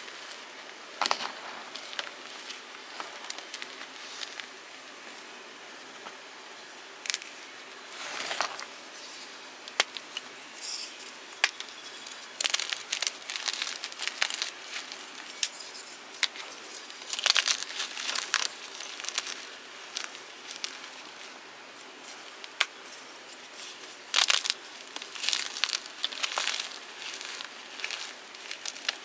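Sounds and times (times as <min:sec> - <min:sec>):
chalk crunching and cracking: 0:11.4 - 0:29.0.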